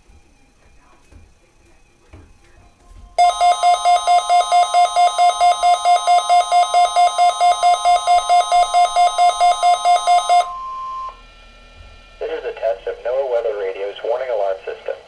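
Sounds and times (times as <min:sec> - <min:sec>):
electronic alarm beeping rapidly: 0:03.2 - 0:11.2
faint steady high tone: 0:03.2 - 0:11.2.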